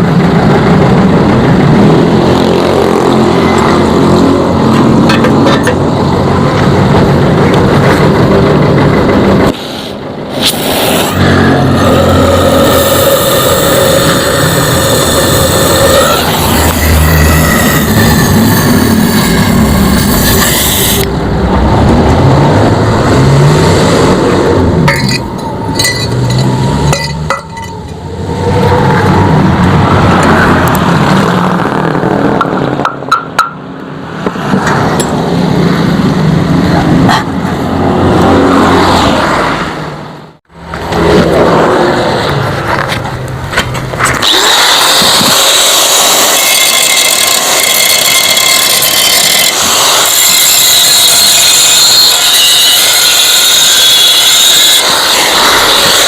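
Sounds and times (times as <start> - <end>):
power tools cutting steel: 10.4 - 21.1, 44.0 - 56.0
high steady grinding: 10.4 - 39.0, 40.6 - 56.0.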